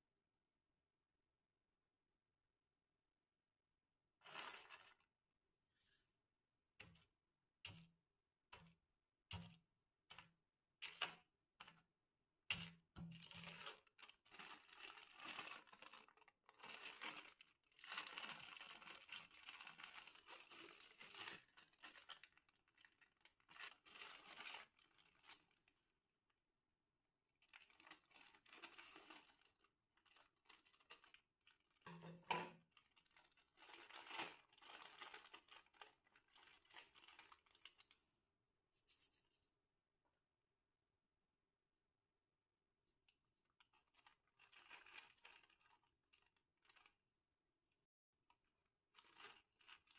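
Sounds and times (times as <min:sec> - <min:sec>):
plastic packets crinkling: 0:04.2 - 0:05.1, 0:13.0 - 0:25.8, 0:27.4 - 0:38.0, 0:43.5 - 0:47.0, 0:48.9 - 0:49.9.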